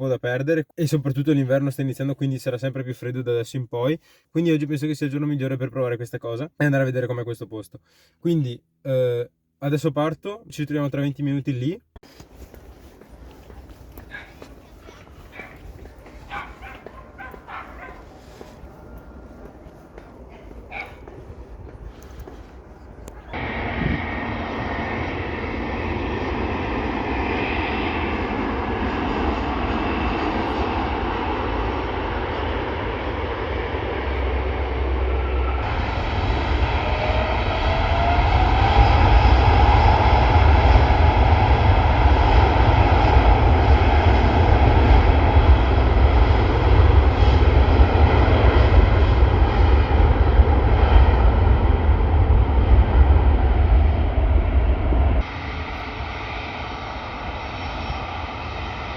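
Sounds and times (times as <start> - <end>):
jet engine whine and rumble: 12.4 - 58.9.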